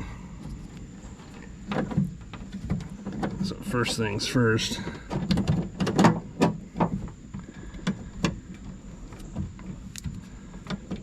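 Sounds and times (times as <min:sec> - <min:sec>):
sharp clicks and light knocks: 0:00.4 - 0:04.2.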